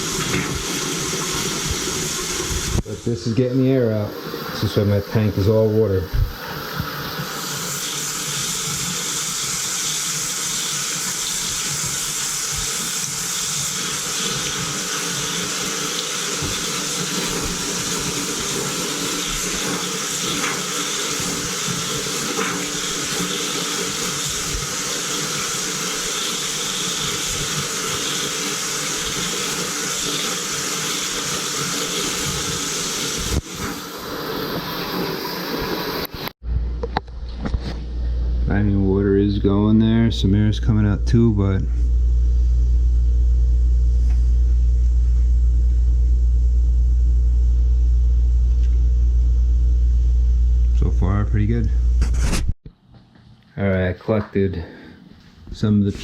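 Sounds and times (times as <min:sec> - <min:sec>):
water rushing through pipes: 0:00.0 - 0:36.4.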